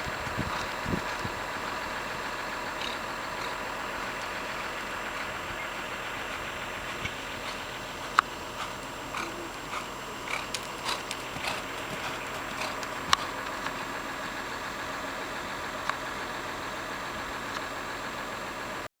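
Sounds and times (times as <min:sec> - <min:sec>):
horse hooves thudding: 0:00.0 - 0:14.4
sharp clicks: 0:06.9 - 0:13.9.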